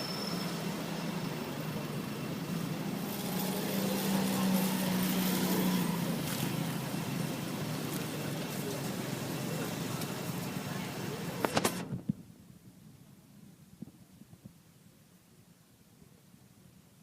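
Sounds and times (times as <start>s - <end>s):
vehicle engine humming: 0.0s - 13.6s.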